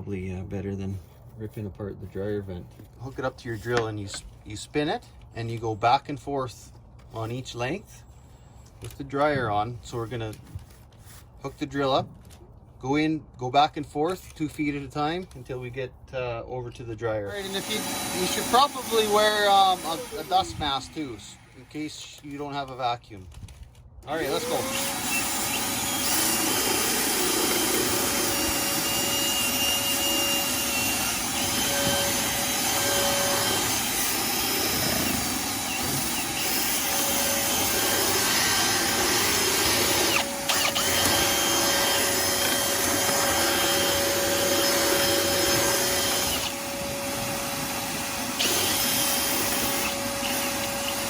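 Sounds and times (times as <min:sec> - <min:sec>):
shop vacuum humming: 0:17.3 - 0:21.6, 0:24.1 - 0:51.0
power drill spinning rods: 0:17.3 - 0:22.4, 0:24.0 - 0:51.0.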